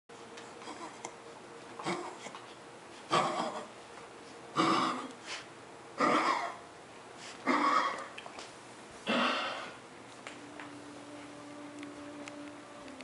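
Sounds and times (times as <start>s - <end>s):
animal hacking coughs: 3.1s - 3.7s, 4.5s - 5.2s, 6.0s - 6.6s, 7.4s - 8.2s.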